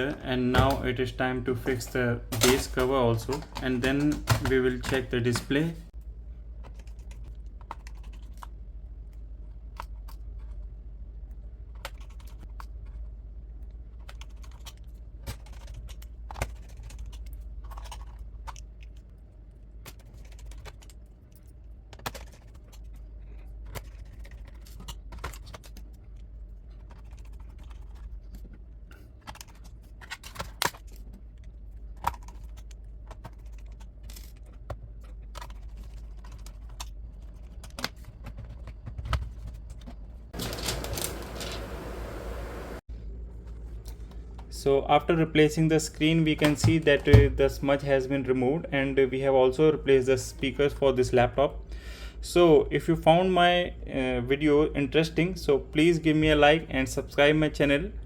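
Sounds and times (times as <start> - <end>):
plastic parts clicking together: 2.3 - 5.6, 11.7 - 19.1, 19.8 - 41.6
steady low hum: 30.9 - 55.8.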